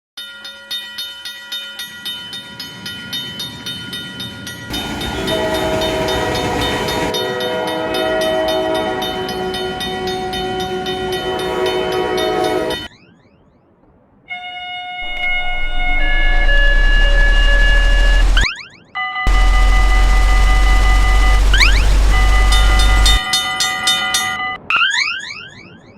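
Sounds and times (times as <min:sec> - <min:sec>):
crossing alarm bell ringing: 0:00.2 - 0:12.9, 0:15.0 - 0:24.7
train rumble: 0:01.8 - 0:12.9, 0:15.0 - 0:18.5, 0:19.3 - 0:24.5
multi-tone train horn: 0:04.7 - 0:12.9, 0:14.3 - 0:18.4.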